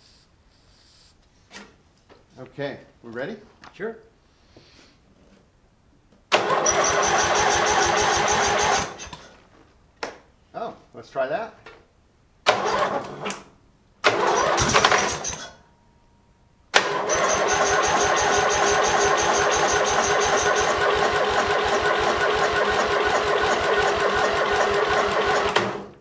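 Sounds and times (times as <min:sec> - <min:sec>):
engine cranking by electric starter: 0:06.3 - 0:09.3, 0:12.4 - 0:15.6, 0:16.7 - 0:26.0.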